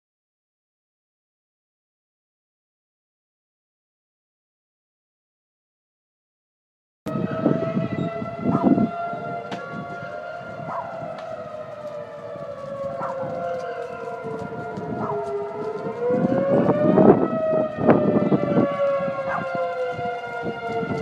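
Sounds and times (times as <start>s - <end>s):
warning siren wailing: 7.1s - 21.0s.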